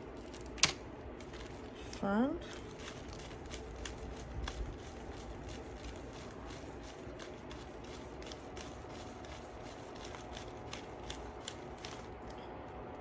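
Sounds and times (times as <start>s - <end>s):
beads clicking and rustling: 0.1s - 8.7s.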